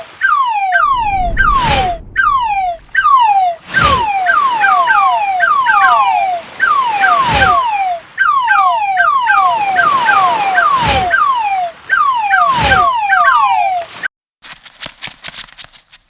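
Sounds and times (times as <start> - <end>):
whoosh: 0.8 - 4.0.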